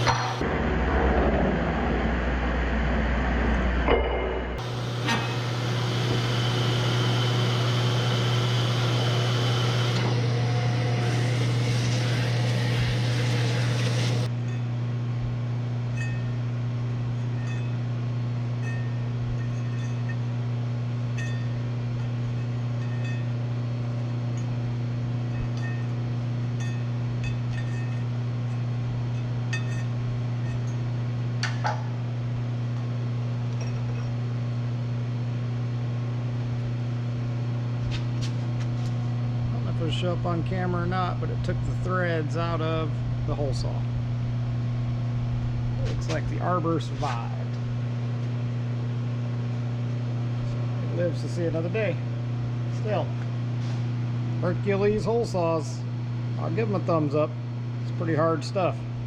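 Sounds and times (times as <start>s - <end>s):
electric motor hum: 0.0s - 59.0s
milling machine cutting: 4.6s - 14.3s.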